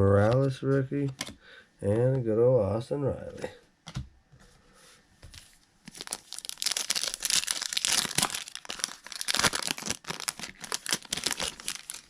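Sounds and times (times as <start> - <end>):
wrapper tearing and crinkling: 5.9 - 12.0.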